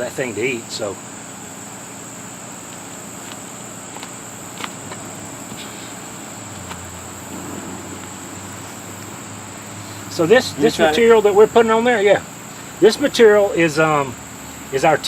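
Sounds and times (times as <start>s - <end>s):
high-pitched insect chorus: 0.0s - 15.0s.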